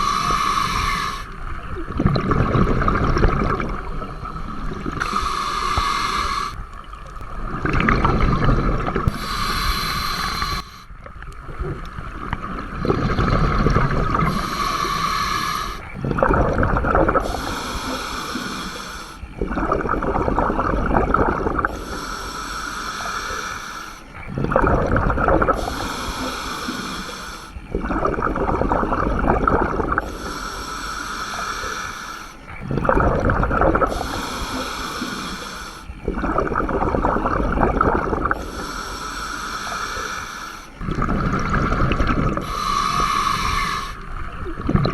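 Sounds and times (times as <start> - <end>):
regulator inhalation hiss: 0.0 - 1.4, 4.6 - 6.6, 8.2 - 10.9, 14.2 - 15.9, 17.2 - 19.3, 21.6 - 24.2, 25.6 - 27.6, 30.0 - 32.5, 33.9 - 35.9, 38.3 - 40.8, 42.3 - 44.1
exhaled bubbles: 0.0 - 44.9.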